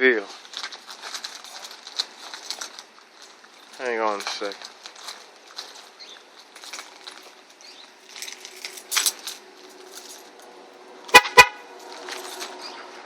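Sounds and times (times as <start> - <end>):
light rustling: 0.2 - 10.5
car horn toots: 11.1 - 11.7.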